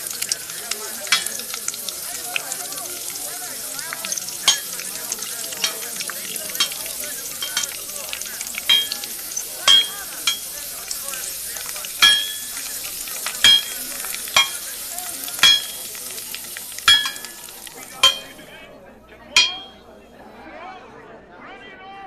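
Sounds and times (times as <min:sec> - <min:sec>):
food sizzling: 0:00.0 - 0:18.6, 0:19.4 - 0:19.8
glasses and cutlery clinking: 0:01.1 - 0:01.6, 0:03.9 - 0:18.6, 0:19.4 - 0:19.9.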